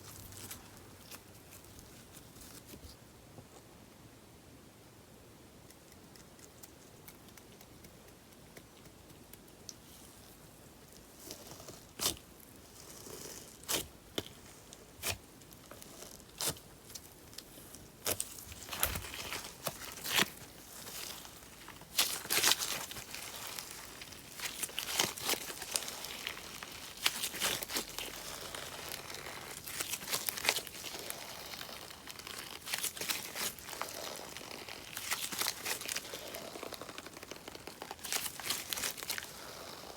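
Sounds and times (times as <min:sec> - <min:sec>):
slime crackling and popping: 0:11.0 - 0:39.9.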